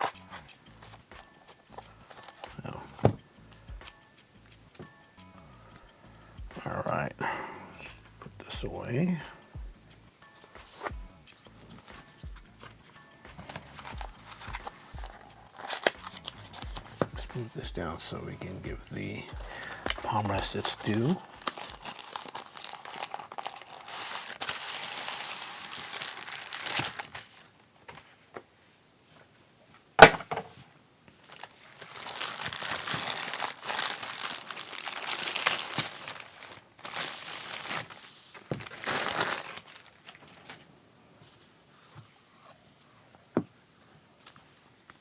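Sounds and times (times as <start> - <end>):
packaging crinkling and rustling: 10.2 - 28.4, 31.2 - 40.7.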